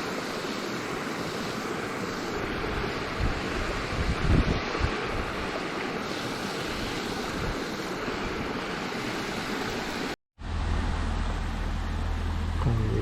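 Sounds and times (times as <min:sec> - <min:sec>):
flowing river water: 0:00.0 - 0:12.5
wind buffeting microphone: 0:02.4 - 0:05.5.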